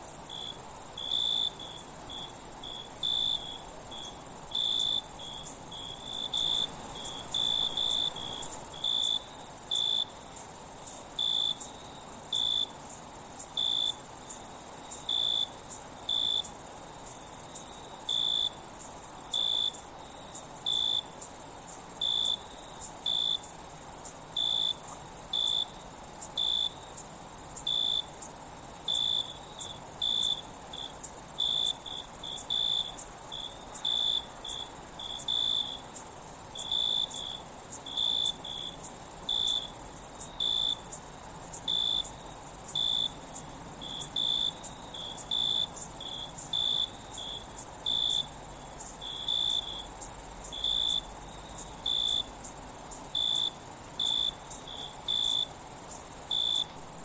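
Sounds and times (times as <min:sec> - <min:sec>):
crickets chirping: 0:00.0 - 0:57.0
high-pitched insect trill: 0:00.0 - 0:57.0.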